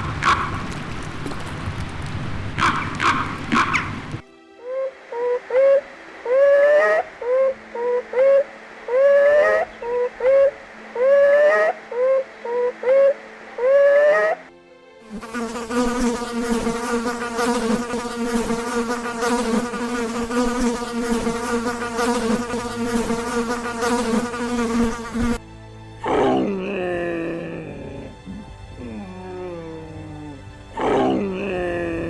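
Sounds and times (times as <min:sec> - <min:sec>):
steady insect-like buzz: 0:03.6 - 0:32.0.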